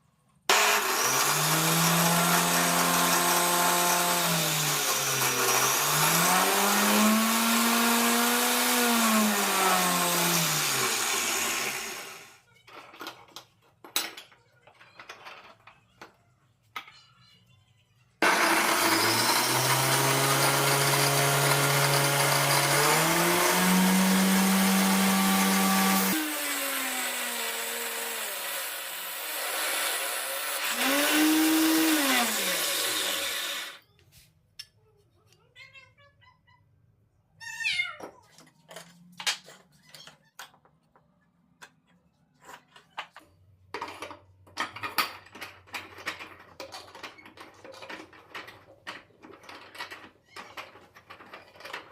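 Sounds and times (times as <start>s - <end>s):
electric power tool motor: 0.5s - 12.4s, 18.2s - 33.8s.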